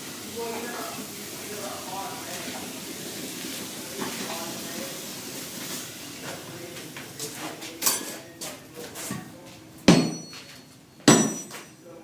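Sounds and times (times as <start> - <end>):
hammer striking iron on anvil: 9.9 - 10.5, 11.1 - 11.7.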